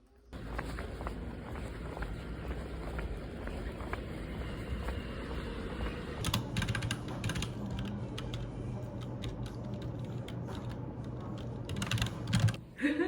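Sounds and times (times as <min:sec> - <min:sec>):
steady low hum: 0:00.3 - 0:13.0.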